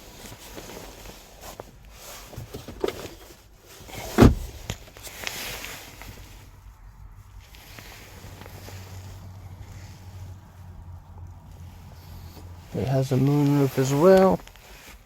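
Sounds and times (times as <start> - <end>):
dull thumps and knocks: 4.1 - 4.7.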